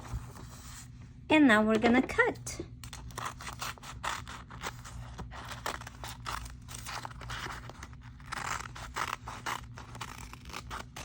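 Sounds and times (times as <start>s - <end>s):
scissors snipping paper: 2.8s - 11.0s.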